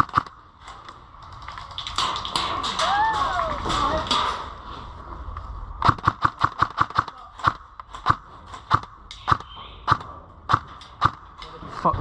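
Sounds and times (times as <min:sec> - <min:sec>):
airsoft gun shots: 0:05.8 - 0:11.2.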